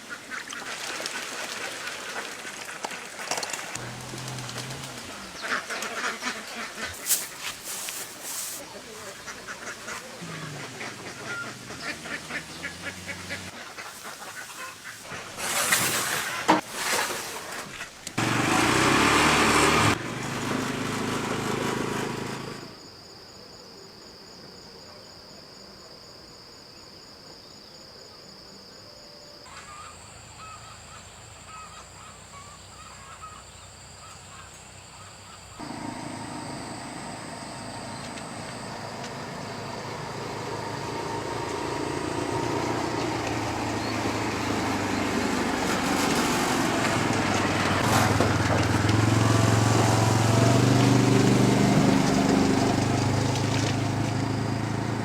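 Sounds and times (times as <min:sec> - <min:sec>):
ducks quacking: 0:03.8 - 0:15.3.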